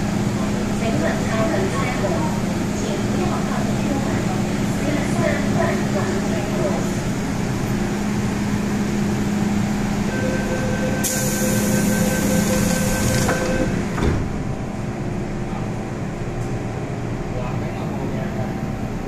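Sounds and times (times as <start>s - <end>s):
train carriage hum: 0.0s - 19.0s
hiss of released air: 11.0s - 11.8s.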